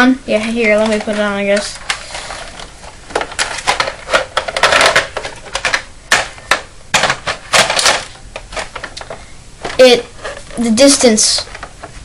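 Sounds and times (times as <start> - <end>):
plastic clicks and rattles: 0.8 - 10.5
plastic parts snapping together: 3.1 - 9.8.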